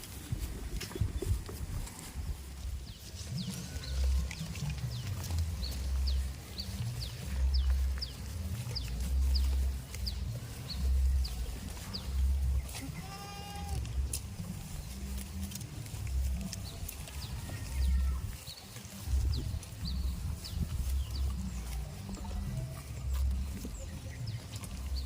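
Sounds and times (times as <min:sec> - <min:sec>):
pulsing low rumble: 0:00.0 - 0:13.0, 0:19.0 - 0:25.0
goat bleating: 0:11.6 - 0:14.7, 0:16.4 - 0:18.4.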